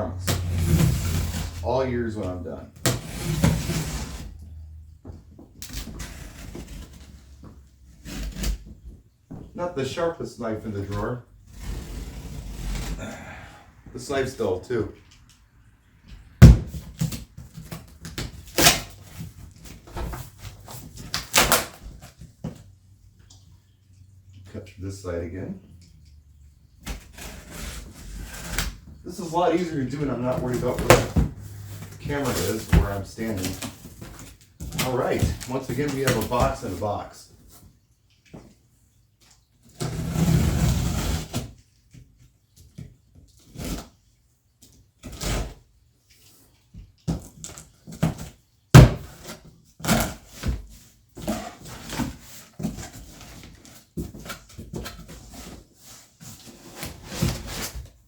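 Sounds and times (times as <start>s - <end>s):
cardboard scraping and crackling: 0.1s - 4.4s, 5.7s - 8.9s, 26.8s - 37.1s, 47.5s - 58.0s
cardboard tearing rips: 0.2s - 1.6s, 2.8s - 4.4s, 16.4s - 19.9s, 20.5s - 22.1s, 26.8s - 36.7s, 48.8s - 50.6s.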